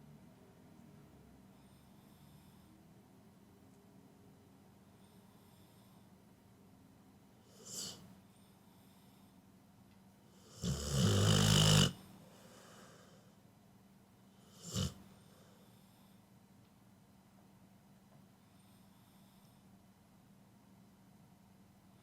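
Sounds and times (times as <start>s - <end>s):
dog snoring: 1.5s - 2.7s, 7.5s - 8.0s, 10.4s - 13.2s, 14.3s - 16.0s.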